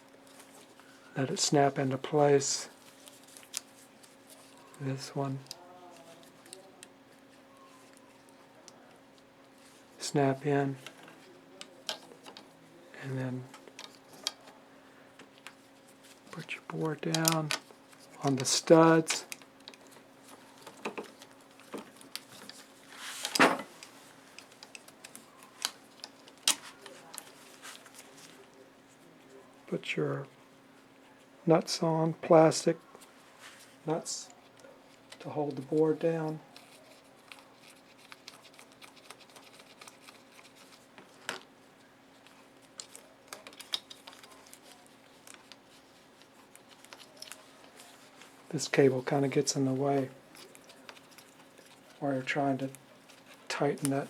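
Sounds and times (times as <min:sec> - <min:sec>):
clicks and knocks of handling: 0:10.8 - 0:12.6, 0:13.4 - 0:14.6, 0:15.2 - 0:28.6, 0:36.5 - 0:41.5, 0:42.2 - 0:48.5, 0:50.3 - 0:52.0
plastic parts clicking: 0:42.2 - 0:47.9.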